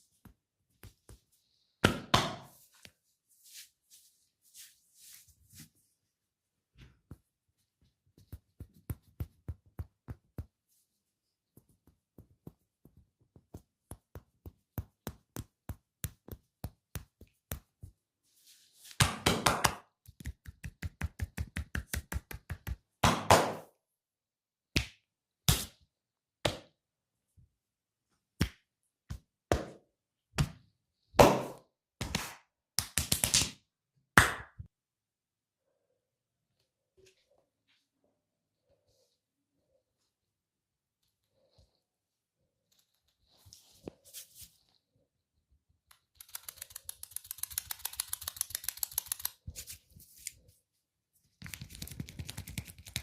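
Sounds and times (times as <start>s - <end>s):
hands tapping in massage: 8.1s - 10.7s, 11.5s - 18.0s
sharp hand slaps: 34.2s - 34.6s.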